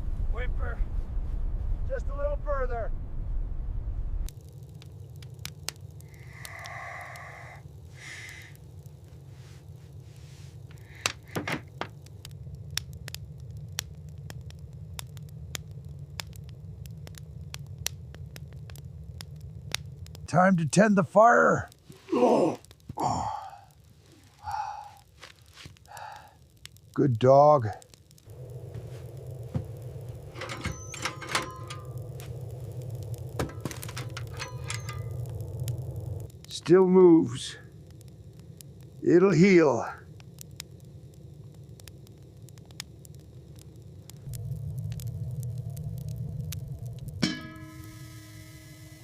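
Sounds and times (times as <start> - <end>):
low fire rumble: 0.0 - 49.0
wood fire crackling and popping: 0.0 - 49.0
loud knocks in stove: 33.4 - 34.1.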